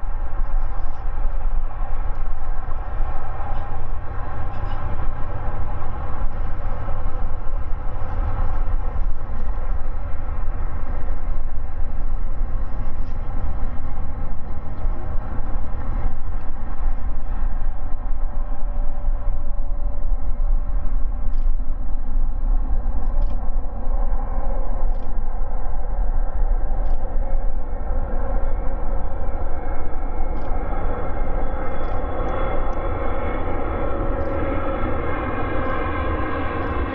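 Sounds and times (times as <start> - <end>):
deep engine rumble: 0.0 - 36.9
jet engines whining: 1.1 - 17.0.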